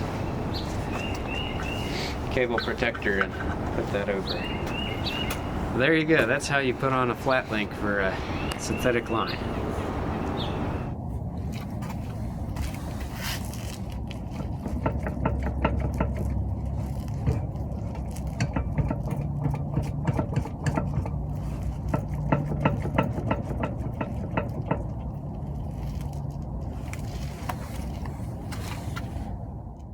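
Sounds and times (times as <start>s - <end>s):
irregular clicks and rattles: 1.1s - 5.8s
motor humming: 7.5s - 11.0s.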